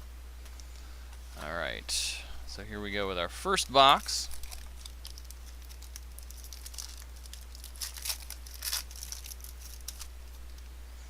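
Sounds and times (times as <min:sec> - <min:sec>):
plastic wrapping crinkling and tearing: 0:04.0 - 0:10.7.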